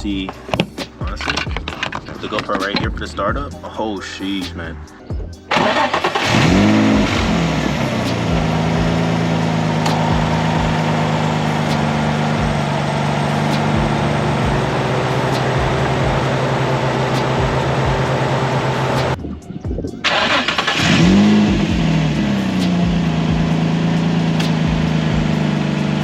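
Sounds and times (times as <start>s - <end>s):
car engine revving and idling: 5.4s - 19.2s, 20.0s - 26.0s.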